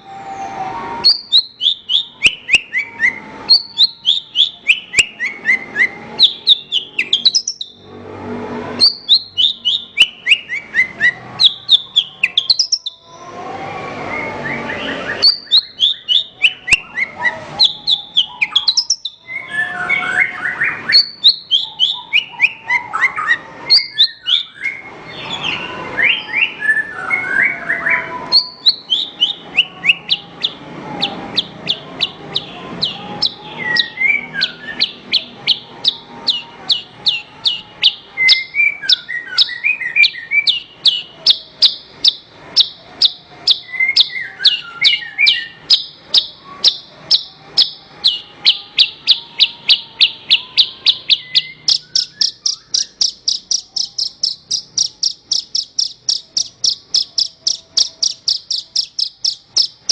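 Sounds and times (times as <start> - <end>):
lark chirping and trilling: 1.0 - 7.9, 8.8 - 13.2, 14.7 - 59.9
lower twittering phrases: 45.6 - 59.9.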